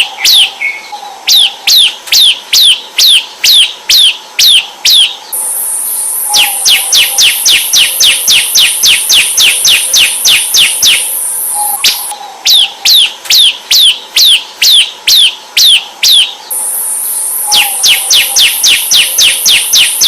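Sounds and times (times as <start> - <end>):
steady high hiss: 5.2 - 12.1, 16.4 - 20.0
bird song falling chirps: 5.3 - 12.3, 16.3 - 20.0.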